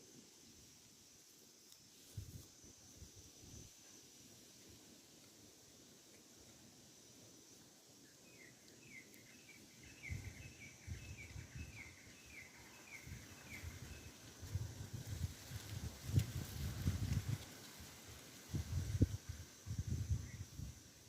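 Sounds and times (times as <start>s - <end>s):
bird chirping: 8.1s - 14.1s.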